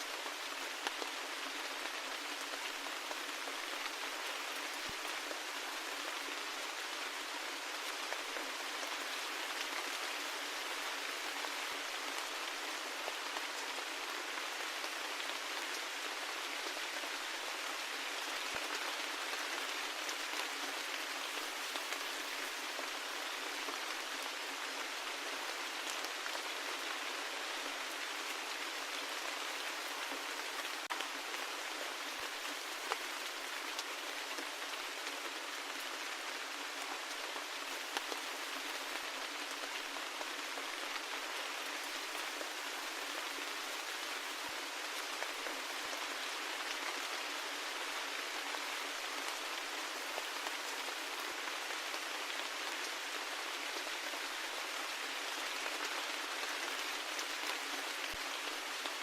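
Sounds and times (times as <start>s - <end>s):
rain hiss: 0.0s - 59.0s.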